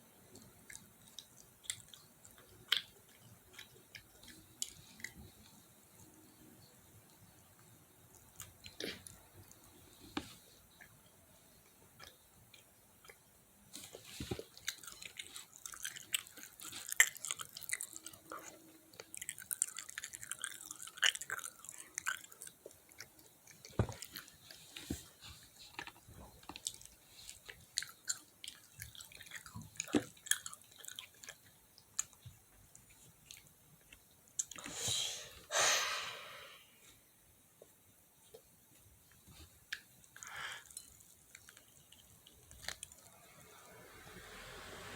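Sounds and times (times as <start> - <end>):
chewing fried chicken: 0.3 - 6.4, 11.6 - 34.6, 39.1 - 44.8.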